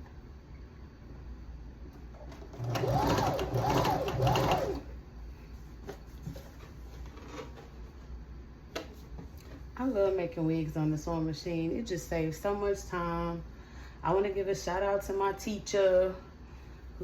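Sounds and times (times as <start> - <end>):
sewing machine stitching: 2.2 - 4.9.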